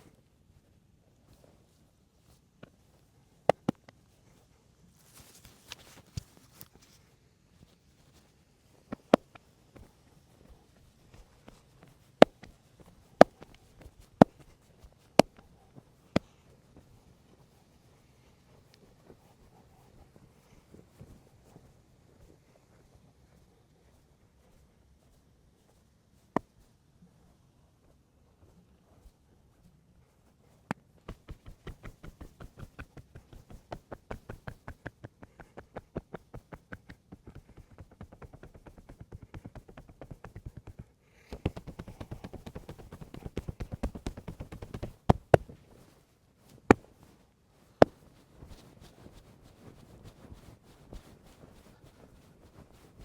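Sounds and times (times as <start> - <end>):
hands tapping and rustling skin: 2.3 - 7.0, 7.6 - 25.1, 30.5 - 47.1, 47.8 - 53.0
hands slapping body: 3.5 - 3.9, 13.2 - 14.5, 30.7 - 45.6.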